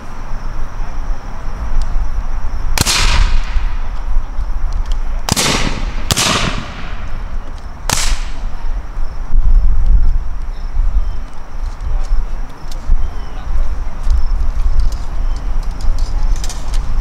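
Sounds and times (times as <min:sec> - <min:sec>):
rifle shots with echo: 0:02.8 - 0:03.8, 0:05.2 - 0:07.3, 0:07.9 - 0:08.5.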